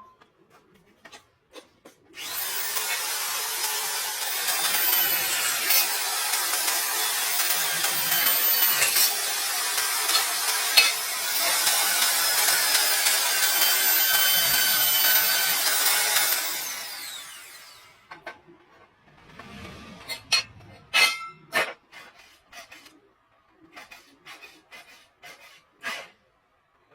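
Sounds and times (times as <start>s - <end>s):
power tool hissing: 2.2s - 18.0s.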